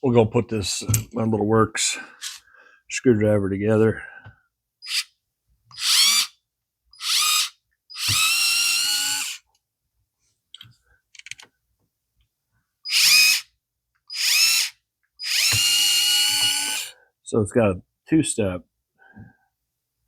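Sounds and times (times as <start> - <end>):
electric screwdriver motor whining: 5.7 - 6.3, 7.0 - 9.4, 12.9 - 13.5, 14.1 - 16.9.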